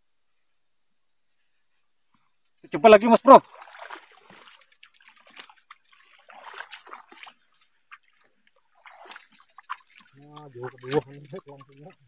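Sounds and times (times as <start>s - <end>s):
small water splashes and dribbles: 2.6s - 12.0s.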